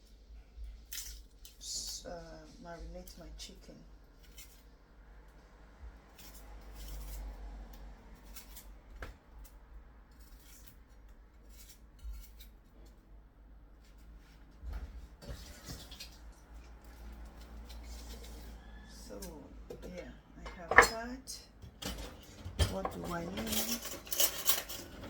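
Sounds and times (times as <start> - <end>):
dishes and utensils clinking: 19.7 - 21.1, 21.7 - 25.0.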